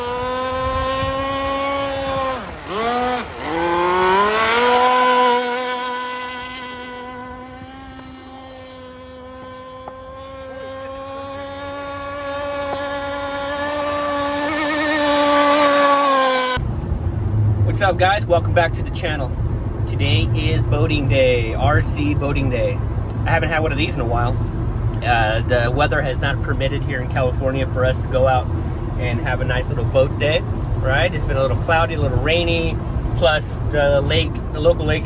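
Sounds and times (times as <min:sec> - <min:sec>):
model boat engine revving: 0:00.0 - 0:16.6.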